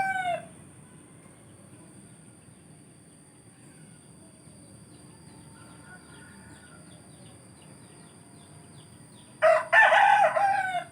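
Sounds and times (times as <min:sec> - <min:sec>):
rooster crowing: 0:00.0 - 0:00.5, 0:05.6 - 0:07.1, 0:09.4 - 0:10.9.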